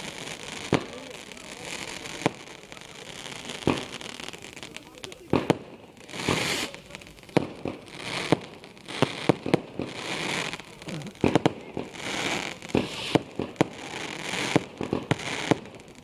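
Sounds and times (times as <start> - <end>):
fireworks hissing burst: 0.0 - 16.0
fireworks popping and crackling: 0.0 - 16.0.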